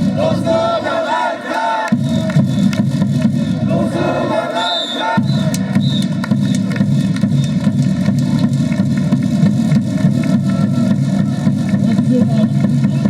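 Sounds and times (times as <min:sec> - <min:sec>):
stadium crowd din: 0:00.0 - 0:13.0
sharp clacks: 0:05.4 - 0:12.8.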